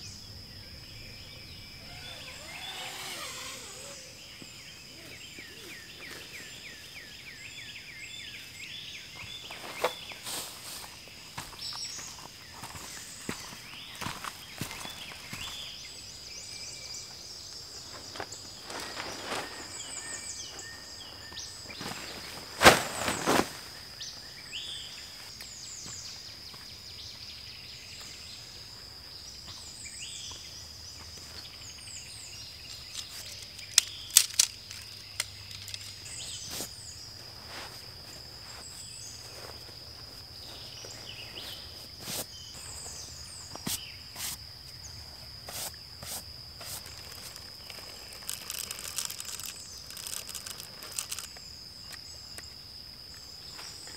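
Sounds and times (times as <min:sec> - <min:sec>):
high-pitched insect drone: 0:00.0 - 0:06.9, 0:28.3 - 0:53.9
birds chirping: 0:00.0 - 0:45.7.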